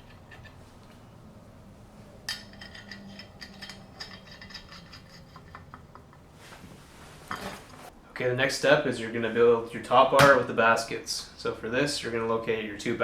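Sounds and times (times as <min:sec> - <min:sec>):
small steel hardware clinking: 0:02.2 - 0:06.2.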